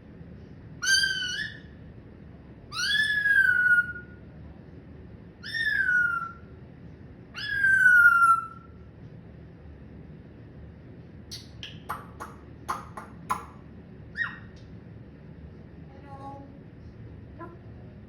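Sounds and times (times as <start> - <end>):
parrot calling: 0.8 - 1.8, 2.7 - 4.2, 5.4 - 6.5, 7.3 - 8.8, 11.3 - 14.6.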